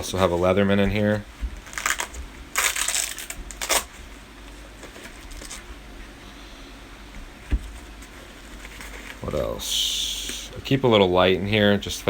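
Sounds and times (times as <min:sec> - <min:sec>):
rustling gear in nylon bag: 0:01.6 - 0:04.0, 0:04.8 - 0:05.7.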